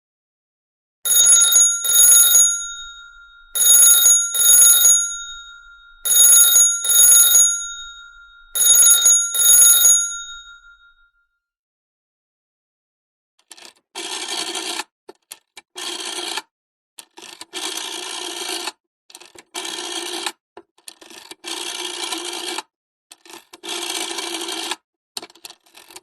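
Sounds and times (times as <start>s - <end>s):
telephone mechanical bell ringing: 1.1s - 11.0s.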